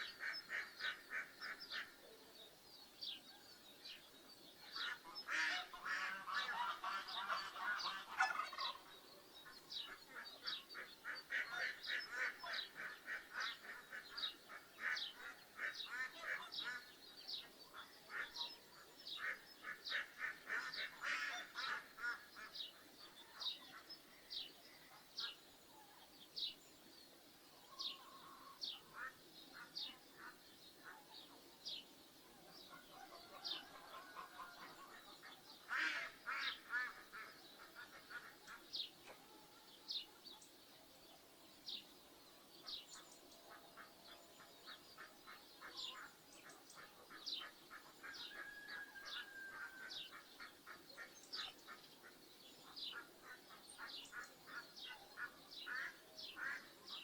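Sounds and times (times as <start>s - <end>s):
ducks quacking: 0.0s - 2.1s, 4.7s - 8.9s, 9.7s - 17.0s, 19.1s - 23.9s, 27.8s - 31.8s, 32.7s - 39.2s, 42.6s - 57.0s.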